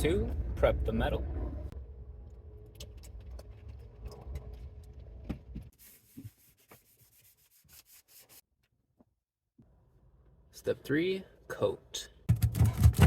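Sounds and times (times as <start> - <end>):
low rumble: 0.0 - 5.6.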